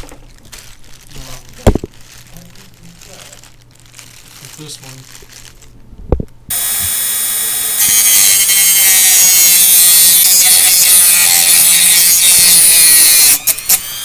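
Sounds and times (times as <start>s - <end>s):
rotary tool grinding: 6.5s - 14.0s.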